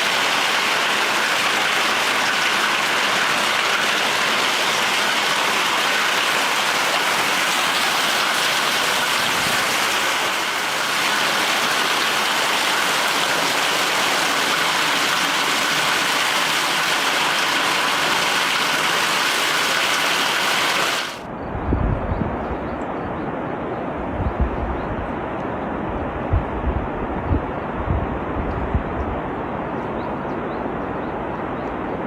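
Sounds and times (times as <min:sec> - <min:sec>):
rushing water: 0:00.0 - 0:21.3.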